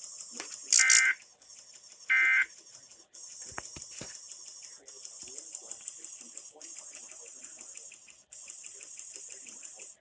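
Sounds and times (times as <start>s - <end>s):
clicks: 0.3s - 1.2s
buzzy two-tone data squawks: 0.7s - 1.2s, 2.1s - 2.5s.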